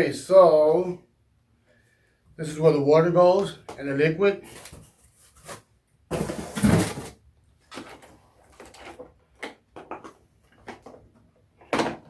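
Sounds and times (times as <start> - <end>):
plastic parts bumping and scraping: 4.4 - 12.0
plastic parts knocking and clicking: 7.7 - 12.0.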